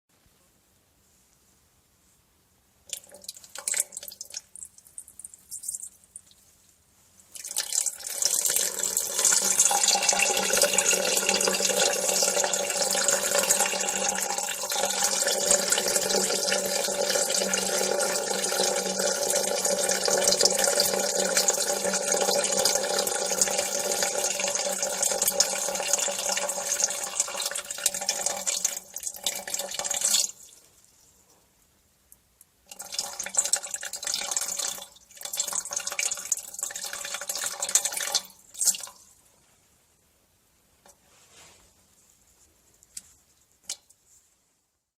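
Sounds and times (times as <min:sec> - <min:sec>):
person urinating: 0:02.9 - 0:06.4, 0:07.3 - 0:30.6, 0:32.7 - 0:39.0.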